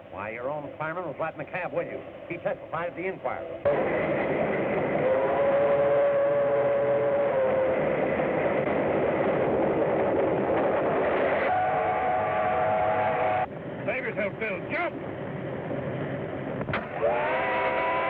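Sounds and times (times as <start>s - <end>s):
steam train rumble and clatter: 0.0s - 6.7s, 7.4s - 18.0s.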